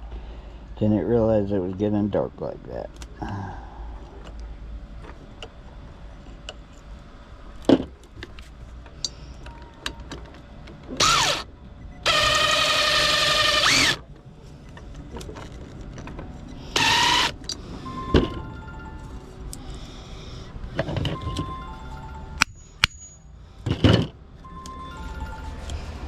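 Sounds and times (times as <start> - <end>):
power drill motor whining: 11.0 - 14.0, 16.7 - 17.4.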